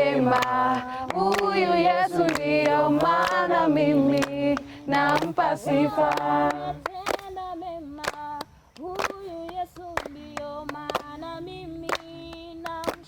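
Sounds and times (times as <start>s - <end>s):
group singing gospel song: 0.0s - 12.3s
hand claps: 0.1s - 13.0s.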